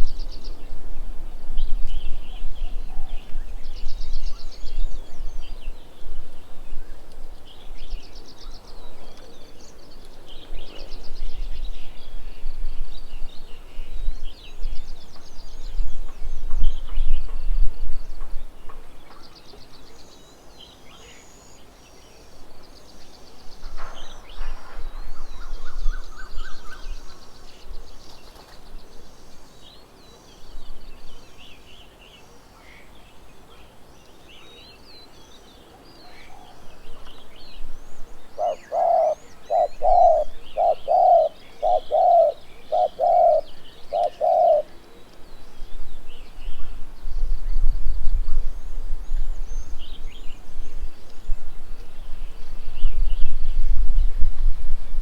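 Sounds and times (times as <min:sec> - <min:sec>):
small birds chirping: 0:01.6 - 0:55.0
low bird notes: 0:37.6 - 0:55.0.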